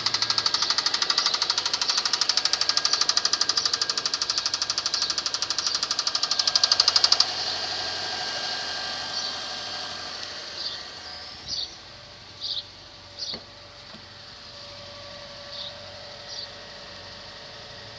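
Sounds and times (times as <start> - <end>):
engine knocking rhythmically: 0.0 - 11.1
hiss: 0.0 - 11.2.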